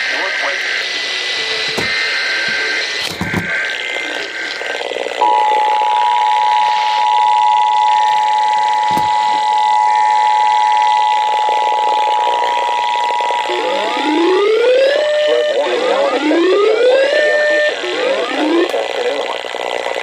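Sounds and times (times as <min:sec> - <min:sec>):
radio hiss: 0:00.0 - 0:20.0
two-tone alert signal: 0:05.2 - 0:17.7
siren-like sweeps: 0:05.2 - 0:18.7.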